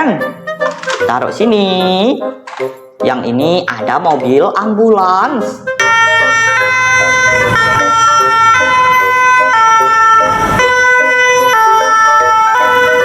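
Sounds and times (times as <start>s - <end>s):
toy ambulance two-tone siren: 5.8s - 13.0s.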